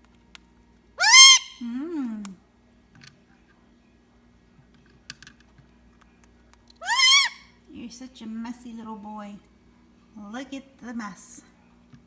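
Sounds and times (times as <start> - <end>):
parrot shrill squawk: 1.0 - 1.6, 6.8 - 7.5
parrot voice-like sound: 1.0 - 1.8, 6.8 - 7.4.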